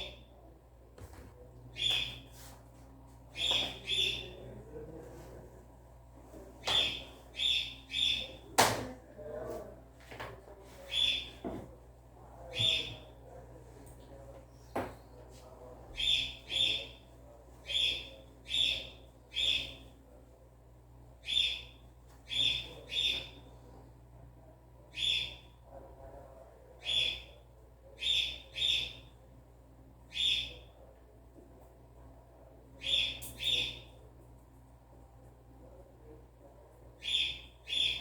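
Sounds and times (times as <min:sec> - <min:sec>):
bird chirping: 0:01.8 - 0:02.3, 0:03.4 - 0:04.4, 0:06.6 - 0:08.4, 0:10.9 - 0:11.3, 0:12.5 - 0:13.1, 0:16.0 - 0:17.0, 0:17.6 - 0:19.8, 0:21.2 - 0:23.4, 0:24.9 - 0:25.5, 0:26.8 - 0:27.3, 0:28.0 - 0:29.1, 0:30.1 - 0:30.6, 0:32.8 - 0:33.9, 0:37.0 - 0:38.0.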